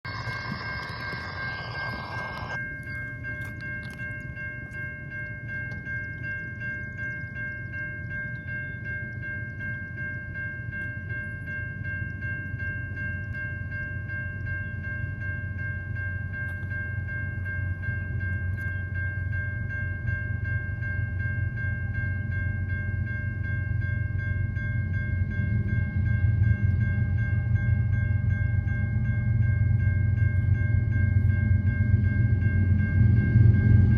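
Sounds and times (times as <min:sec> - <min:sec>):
diesel locomotive rumble: 0:00.0 - 0:03.7, 0:15.5 - 0:33.9
crossing warning bell ringing: 0:00.0 - 0:33.9.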